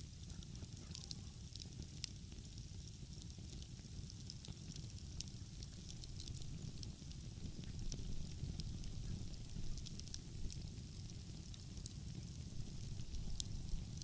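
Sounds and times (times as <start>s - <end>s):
wood fire crackling: 0.0s - 14.0s
sharp pops and ticks: 3.2s - 14.0s.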